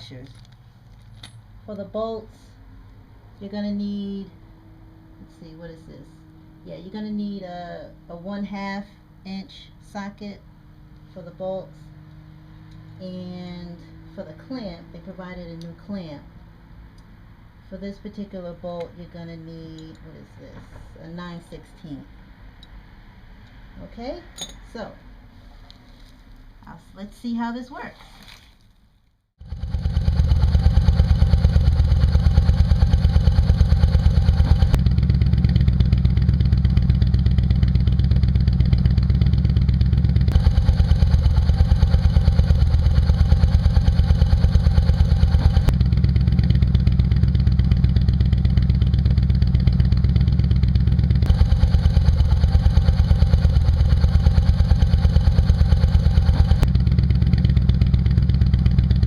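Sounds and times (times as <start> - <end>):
motorcycle engine idling: 29.4 - 59.0.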